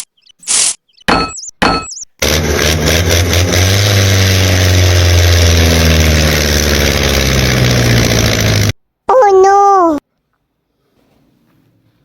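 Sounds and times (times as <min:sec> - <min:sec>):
engine humming: 0:01.8 - 0:08.8.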